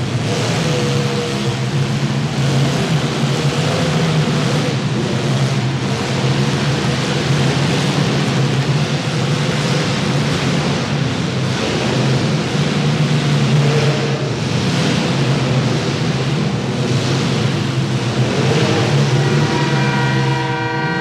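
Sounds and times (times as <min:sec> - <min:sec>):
car engines revving: 0:00.0 - 0:21.0
car horn: 0:18.6 - 0:21.0.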